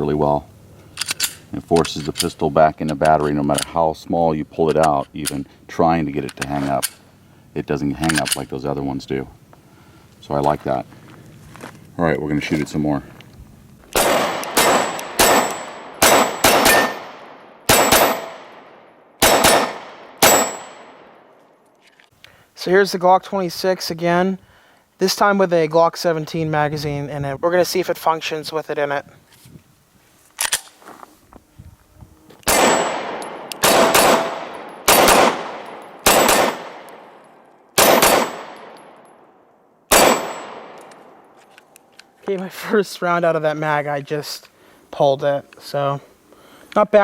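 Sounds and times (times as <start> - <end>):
pistol shots echoing: 13.9 - 21.3, 32.4 - 39.2, 39.9 - 41.3.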